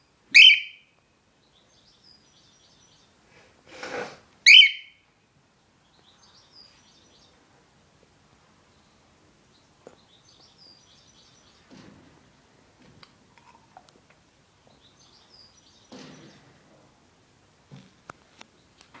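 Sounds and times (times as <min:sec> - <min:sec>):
bird chirping: 0:00.0 - 0:03.2, 0:04.4 - 0:05.0, 0:05.8 - 0:07.4, 0:08.7 - 0:11.8, 0:14.6 - 0:16.6
soft knocks and rustles: 0:11.6 - 0:13.6.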